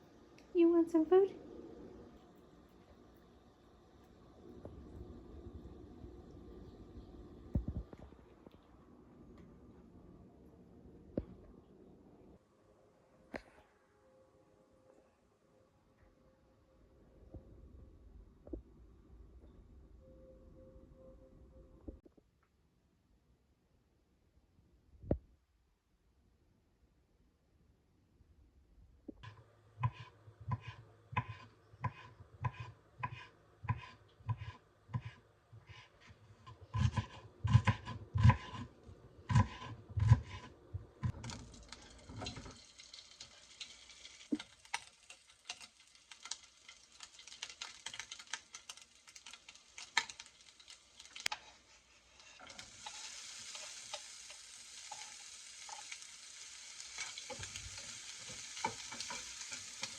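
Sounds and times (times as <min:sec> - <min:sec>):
food sizzling in a frying pan: 0:41.1 - 0:59.9.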